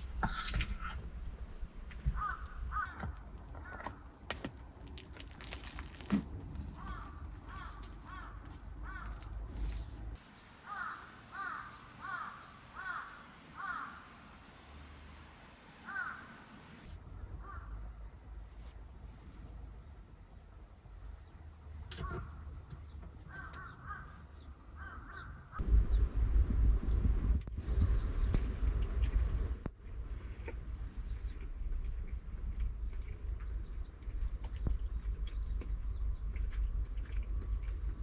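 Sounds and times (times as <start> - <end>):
crow cawing: 2.1 - 4.0, 6.7 - 9.3, 10.6 - 14.4, 15.8 - 16.6, 17.4 - 17.7, 23.3 - 24.2, 24.8 - 25.6.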